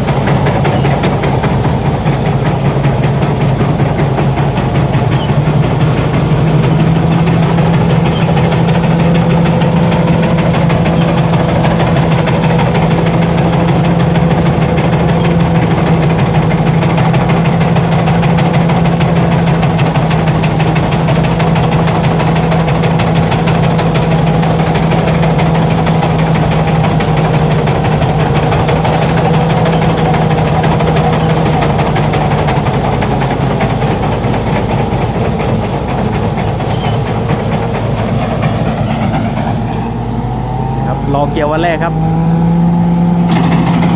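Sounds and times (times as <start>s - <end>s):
combine harvester engine drone: 0.0s - 43.9s.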